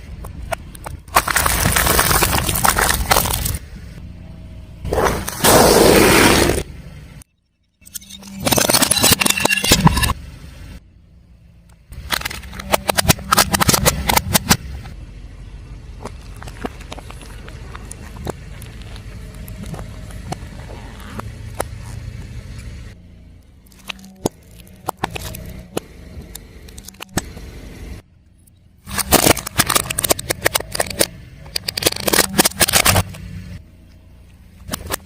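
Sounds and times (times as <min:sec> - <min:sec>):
tyre crushing crunchy objects: 0:01.0 - 0:03.6, 0:04.9 - 0:06.6, 0:28.8 - 0:33.3
car running low: 0:13.8 - 0:35.0.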